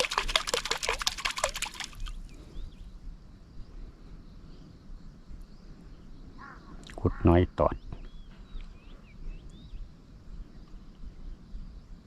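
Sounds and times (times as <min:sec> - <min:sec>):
water splashing: 0:00.0 - 0:02.3.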